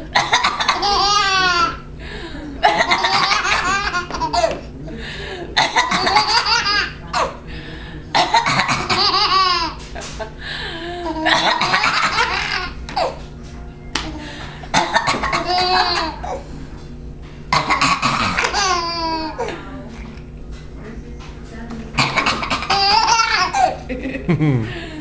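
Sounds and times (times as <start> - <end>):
child giggling: 22.5 - 24.7.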